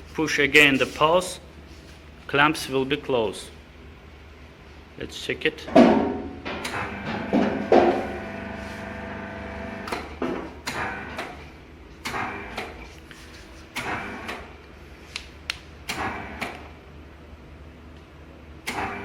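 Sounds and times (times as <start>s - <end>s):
machine hum: 2.9s - 15.0s.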